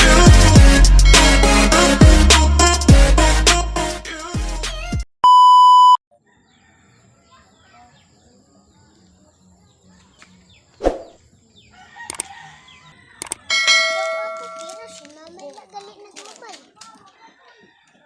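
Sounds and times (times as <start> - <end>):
electronic beep tone: 5.2 - 6.0.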